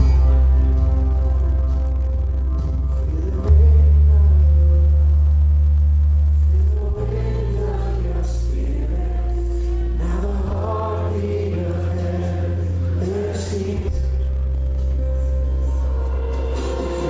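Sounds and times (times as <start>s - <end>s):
low bass or keyboard notes: 0.0s - 17.0s
voices singing worship music: 6.4s - 14.4s.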